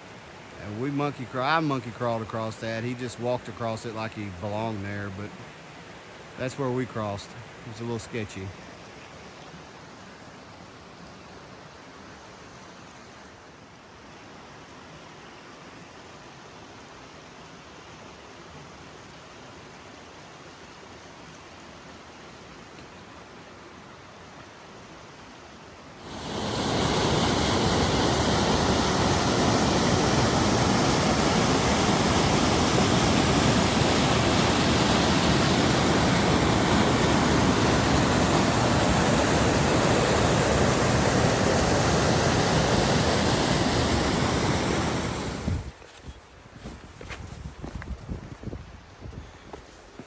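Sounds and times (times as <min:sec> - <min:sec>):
faint stream: 0:00.0 - 0:50.0
waterfall rushing: 0:26.0 - 0:45.8.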